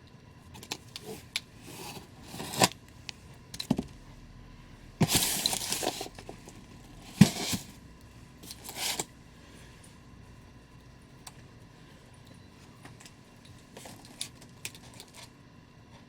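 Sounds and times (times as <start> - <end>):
packaging tearing and scraping: 0.6 - 2.8, 5.0 - 7.8, 8.4 - 9.1.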